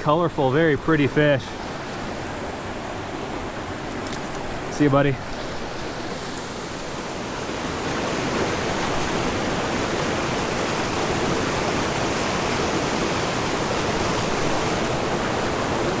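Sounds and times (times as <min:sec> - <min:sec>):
creek rushing over rocks: 0:00.0 - 0:16.0.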